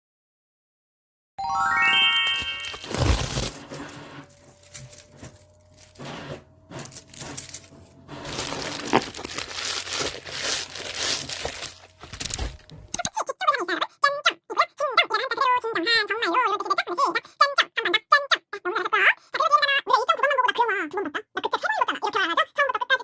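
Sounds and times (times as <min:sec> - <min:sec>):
rustling and crinkling handling: 0:02.2 - 0:13.0.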